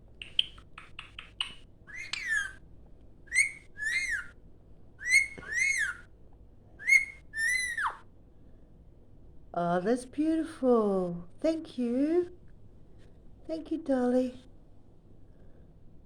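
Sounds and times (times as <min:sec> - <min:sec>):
parrot chirping and whistling: 0:00.2 - 0:02.6, 0:03.3 - 0:04.3, 0:05.0 - 0:06.0, 0:06.8 - 0:08.0.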